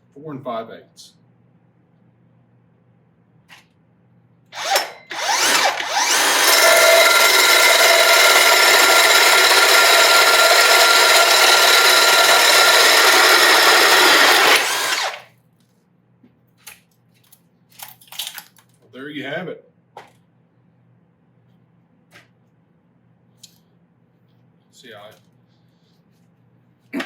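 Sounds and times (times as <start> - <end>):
drill trigger blip: 4.6 - 15.2
hole saw cutting through wood: 4.6 - 15.3.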